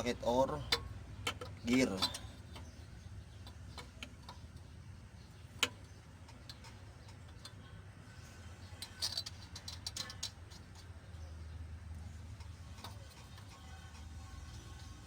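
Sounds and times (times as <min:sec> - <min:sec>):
metallic clicks and taps: 0:00.6 - 0:04.7, 0:05.5 - 0:07.8.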